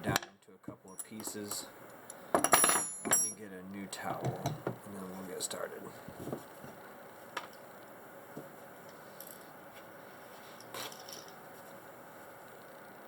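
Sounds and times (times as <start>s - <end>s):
small handling noises: 4.2s - 12.8s.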